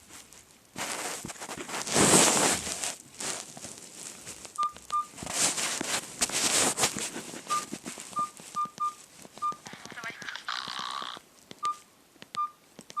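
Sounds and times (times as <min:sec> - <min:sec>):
rustling handling noise: 0:00.0 - 0:11.6
phone keypad beeps: 0:04.6 - 0:05.1, 0:07.5 - 0:13.0.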